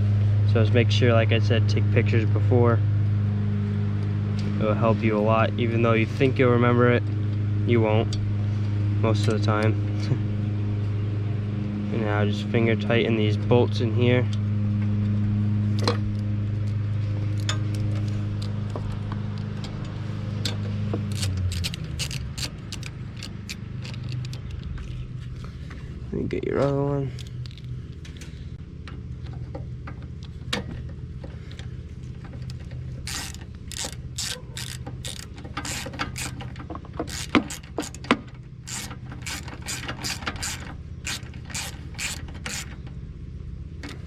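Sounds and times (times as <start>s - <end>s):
low machine hum: 0.0s - 44.0s
metal parts clicking and clinking: 19.6s - 25.1s, 26.6s - 27.7s, 32.4s - 42.8s.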